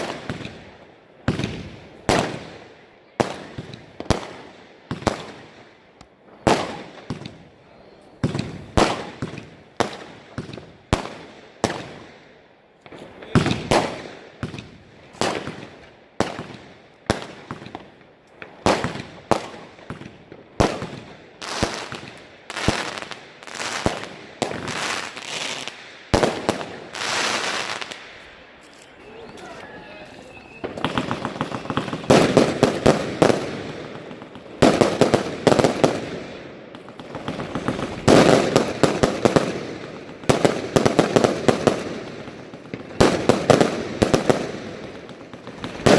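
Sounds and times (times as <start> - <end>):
fireworks bangs with crackling hiss: 0.0 - 45.9.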